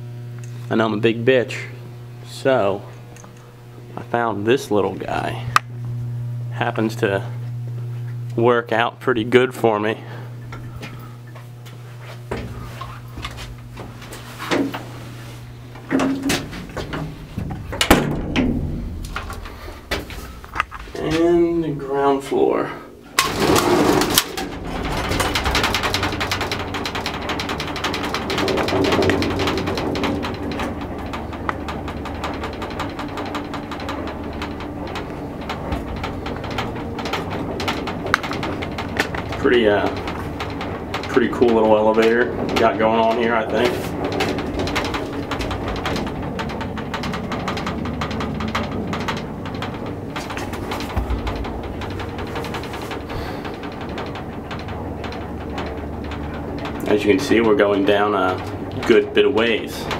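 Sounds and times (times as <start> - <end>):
elevator droning hum: 0.0 - 59.9
elevator clunk: 10.1 - 59.9
rapid even ticking: 23.0 - 59.9.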